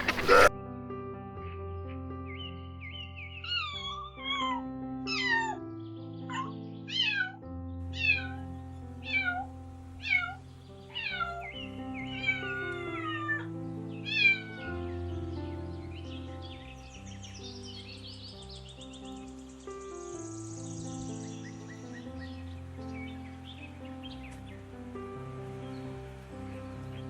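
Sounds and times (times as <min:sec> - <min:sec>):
background music: 0:00.0 - 0:27.0
cat meowing: 0:03.4 - 0:05.6, 0:06.3 - 0:14.9.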